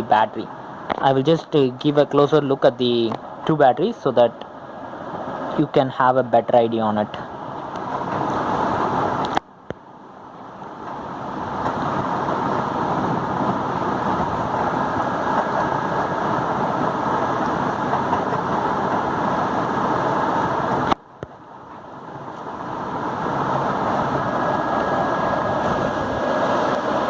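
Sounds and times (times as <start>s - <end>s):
steady rushing noise: 11.0s - 27.0s.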